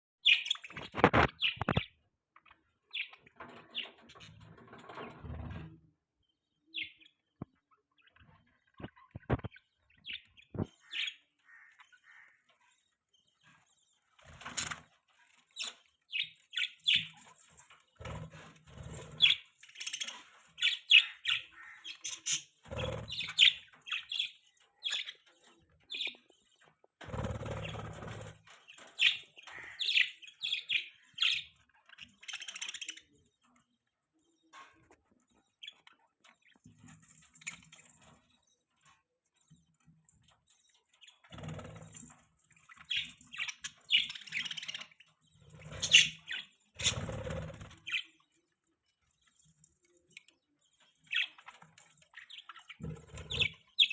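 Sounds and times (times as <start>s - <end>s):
budgerigars chirping: 9.1s - 12.4s, 19.0s - 25.3s, 28.8s - 33.1s, 42.7s - 48.2s, 51.1s - 53.9s.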